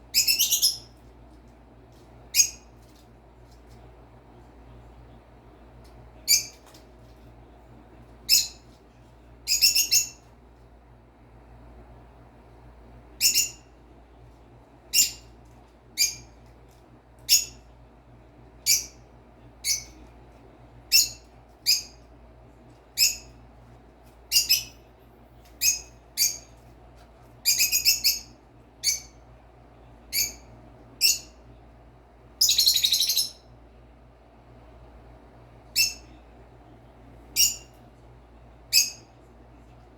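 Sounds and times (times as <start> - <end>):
bird chattering: 0.2 - 0.8, 32.4 - 33.4
bird chirping: 0.2 - 0.9, 9.5 - 10.2, 13.2 - 13.6, 27.5 - 29.1, 32.4 - 33.4, 37.4 - 37.7.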